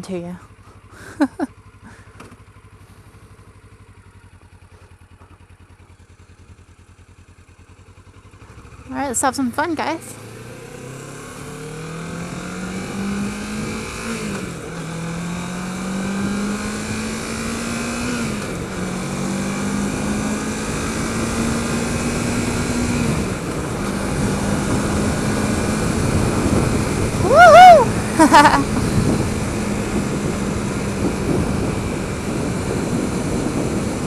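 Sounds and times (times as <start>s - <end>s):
motorcycle engine accelerating: 0.0s - 34.0s
wind noise: 15.8s - 34.0s.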